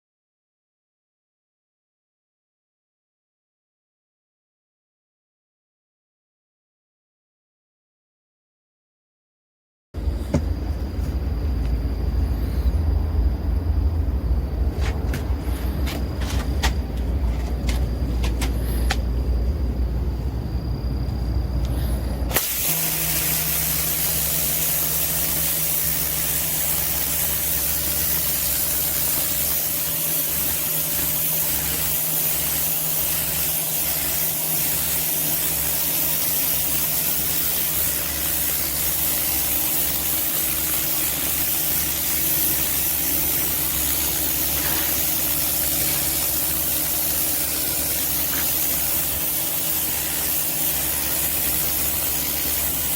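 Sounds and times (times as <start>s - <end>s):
motor and pump humming: 10.0s - 12.4s, 22.2s - 52.9s
low rumble: 10.0s - 22.3s
pressure washer spray hiss: 21.7s - 52.9s.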